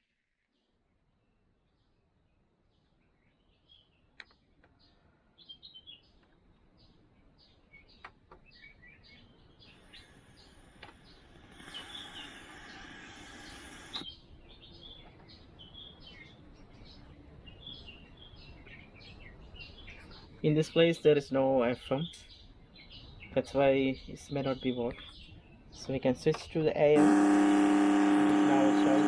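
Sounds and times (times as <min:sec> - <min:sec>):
small birds chirping: 0:00.2 - 0:29.0
radio static hiss: 0:09.9 - 0:14.0, 0:26.9 - 0:29.0
sharp clicks: 0:10.8 - 0:14.1.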